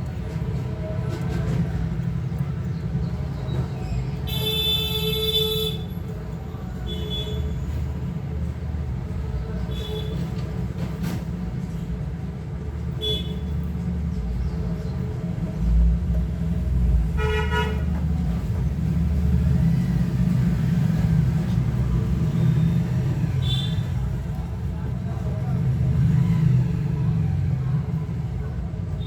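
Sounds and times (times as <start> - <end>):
road traffic rumble: 0.0 - 29.0
vehicle horn honks: 17.2 - 17.9.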